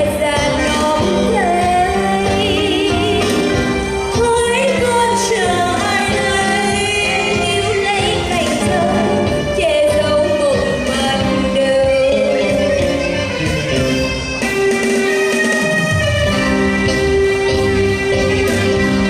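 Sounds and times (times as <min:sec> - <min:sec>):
person singing with vibrato: 0:00.0 - 0:13.5
instrumental accompaniment: 0:00.0 - 0:19.0.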